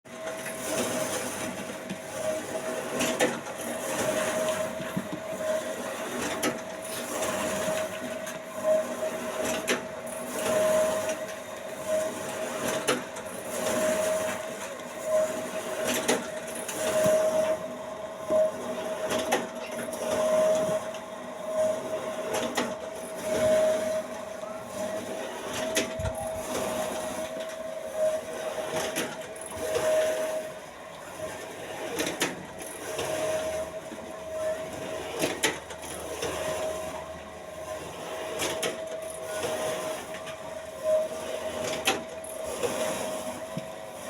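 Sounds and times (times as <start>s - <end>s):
machine humming: 13.2s - 38.0s.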